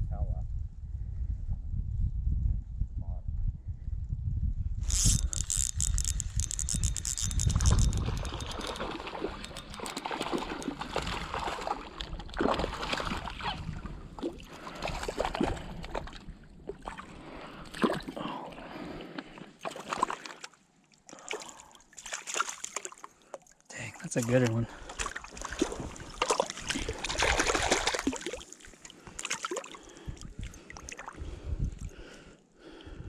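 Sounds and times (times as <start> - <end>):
water trickling: 4.8 - 13.2
small water splashes: 8.2 - 18.3, 19.6 - 31.2.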